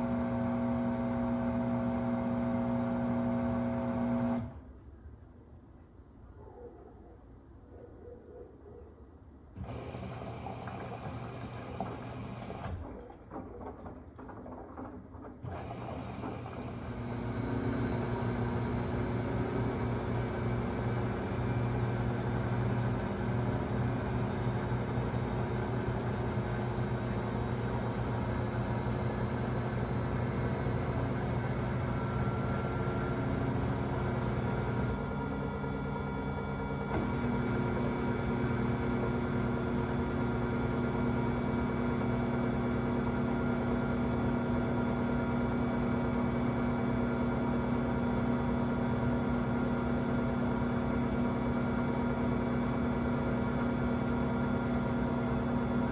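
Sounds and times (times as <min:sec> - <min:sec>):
washing machine drain pump humming: 0:00.0 - 0:04.5, 0:09.6 - 0:55.9.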